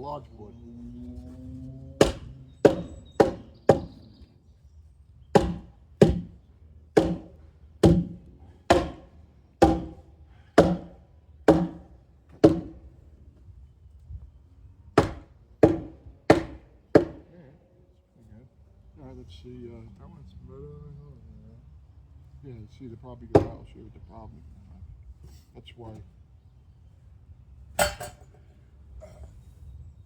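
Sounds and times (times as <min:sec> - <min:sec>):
board striking wooden boards: 0:02.0 - 0:04.0, 0:05.3 - 0:10.0, 0:10.6 - 0:12.8, 0:15.0 - 0:17.3, 0:23.3 - 0:23.6.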